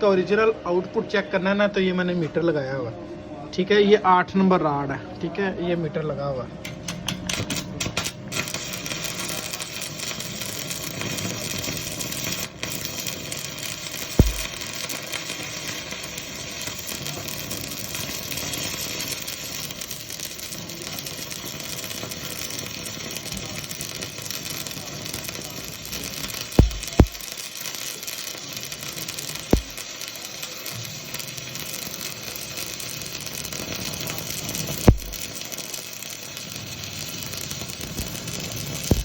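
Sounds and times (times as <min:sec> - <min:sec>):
welding arc crackling: 0:06.7 - 0:39.0
low thump: 0:14.2 - 0:14.6, 0:26.6 - 0:27.2, 0:29.6 - 0:29.8, 0:34.9 - 0:35.2.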